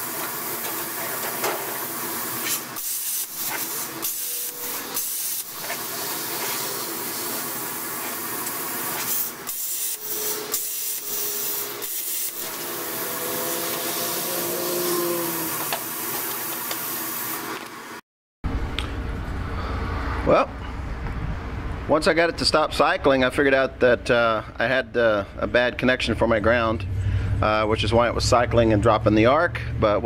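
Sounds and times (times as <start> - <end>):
plasma cutter hissing: 0.0 - 18.0.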